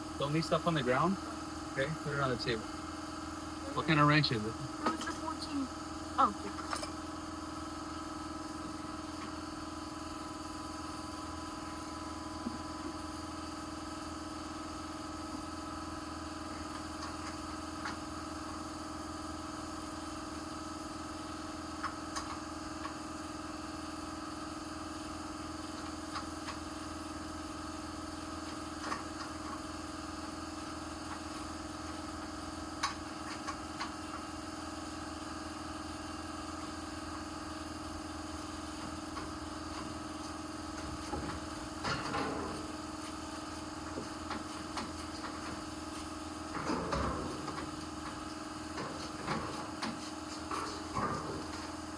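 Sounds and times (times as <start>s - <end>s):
steady mechanical hum: 0.0s - 51.9s.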